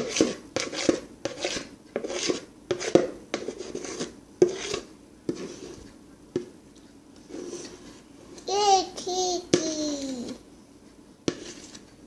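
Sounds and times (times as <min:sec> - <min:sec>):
spoon scraping batter from bowl: 0:00.0 - 0:06.0, 0:07.2 - 0:08.4, 0:11.3 - 0:12.0.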